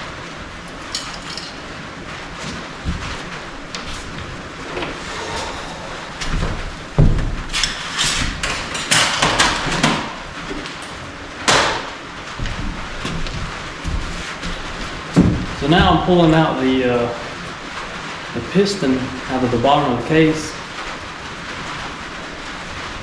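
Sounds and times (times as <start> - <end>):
metal parts clanking on workbench: 0.9 - 1.6.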